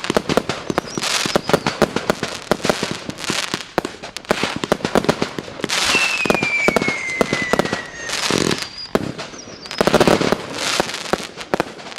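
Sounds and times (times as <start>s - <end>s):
fireworks crackling: 0.0s - 11.9s
fireworks launch reports and bursts: 0.0s - 11.9s
firework whistle sliding down: 5.7s - 10.1s.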